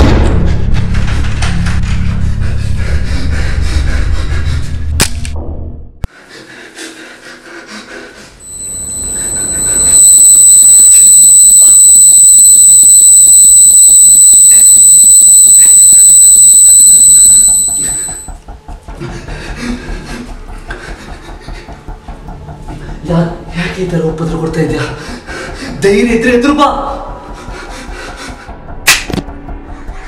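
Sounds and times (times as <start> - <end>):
piercing high-pitched whine: 8.4 - 18.3.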